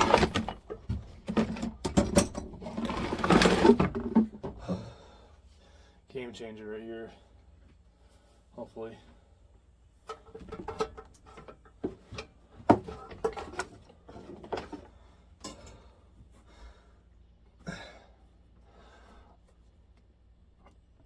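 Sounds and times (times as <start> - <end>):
hard objects knocking and scraping: 0.0 - 4.6
loud breath: 4.5 - 6.0.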